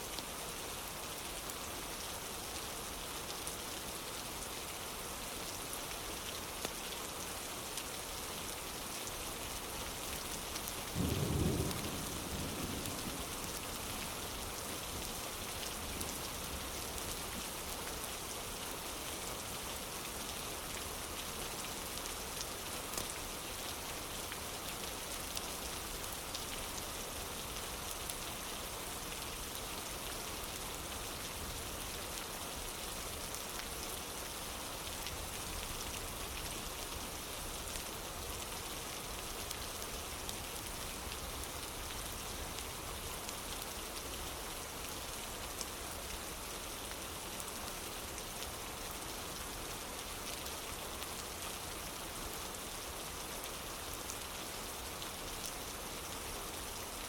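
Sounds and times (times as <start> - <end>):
steady rain hiss: 0.0 - 57.0
low rumble of thunder: 10.9 - 14.2.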